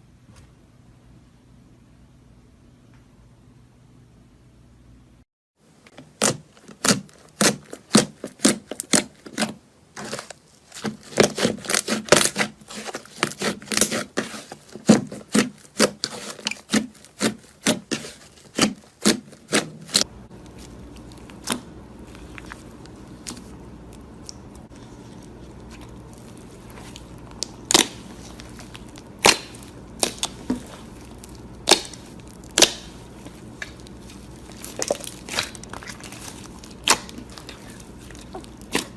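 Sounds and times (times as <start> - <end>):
steady low hum: 12.5 - 38.9.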